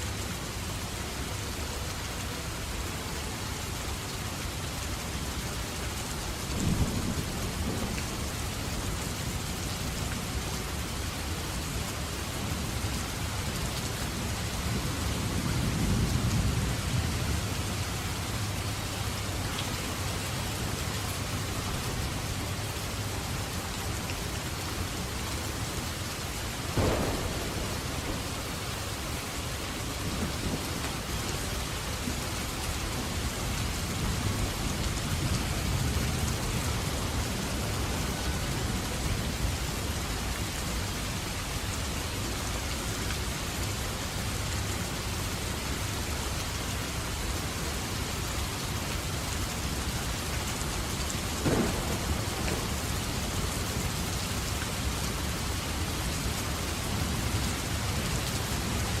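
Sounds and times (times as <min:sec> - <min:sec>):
rain falling: 0:00.0 - 0:59.0
thunder rumbling: 0:26.7 - 0:39.3, 0:51.2 - 0:54.9
sharp thunder crack: 0:26.8 - 0:30.8, 0:51.4 - 0:53.4.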